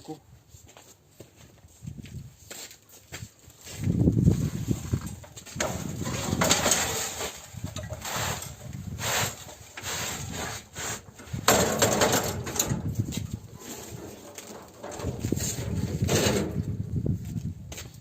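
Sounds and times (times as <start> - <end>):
machine scraping: 4.4 - 12.7
block making machine rattling: 5.1 - 8.4, 11.5 - 12.9.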